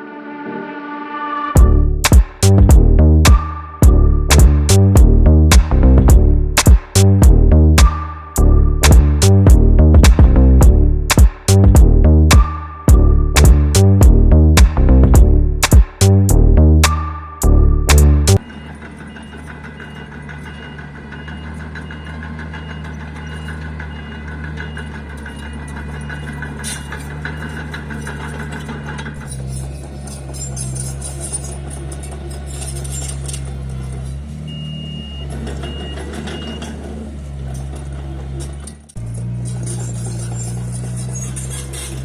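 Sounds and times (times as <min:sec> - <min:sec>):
reversing alarm beeping: 0:01.2 - 0:09.9, 0:10.7 - 0:14.6, 0:16.7 - 0:26.5, 0:34.5 - 0:36.8
diesel engine running: 0:01.6 - 0:30.4.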